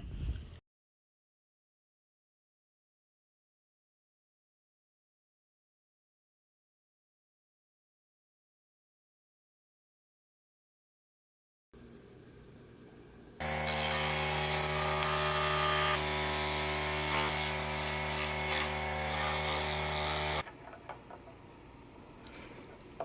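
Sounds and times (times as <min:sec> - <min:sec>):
small electric motor humming: 0:13.4 - 0:20.4.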